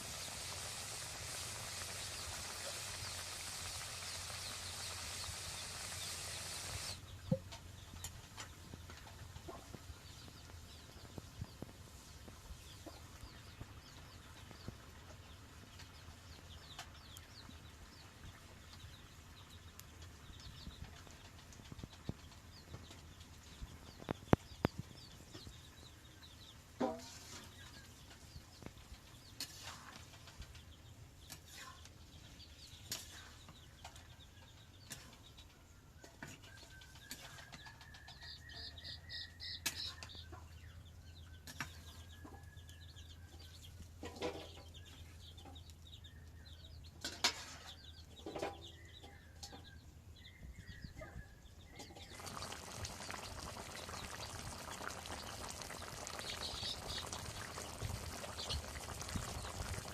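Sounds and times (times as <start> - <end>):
steady rushing hiss: 0.0 - 7.0
chickens clucking: 12.6 - 15.2, 41.4 - 49.9, 50.8 - 59.9.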